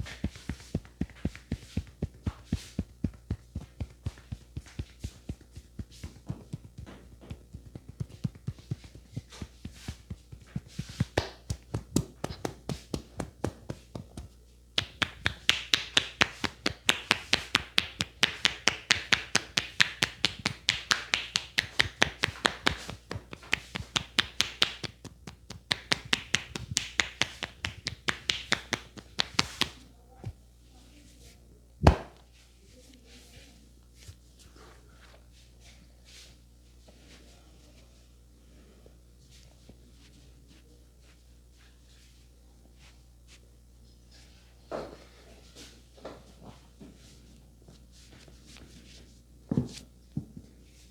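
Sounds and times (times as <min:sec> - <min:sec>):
hands tapping on a head: 0:00.0 - 0:30.4, 0:31.8 - 0:32.2.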